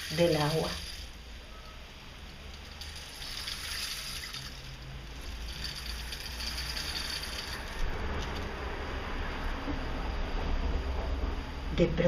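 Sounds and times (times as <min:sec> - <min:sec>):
water flowing: 0:02.5 - 0:08.4.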